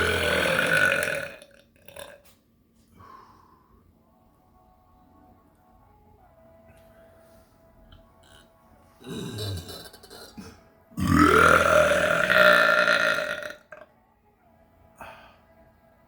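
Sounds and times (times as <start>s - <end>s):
person burping: 0.0s - 2.3s, 9.0s - 13.8s.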